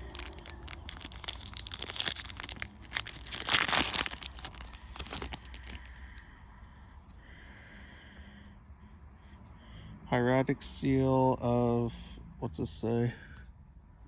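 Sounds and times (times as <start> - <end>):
foil wrapper crinkling and tearing: 0.0 - 6.0.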